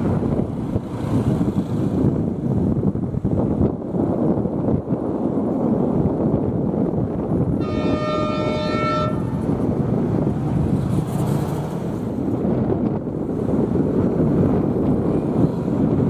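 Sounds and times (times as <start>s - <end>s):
steady low rumble: 0.0s - 16.0s
train horn: 7.6s - 9.5s.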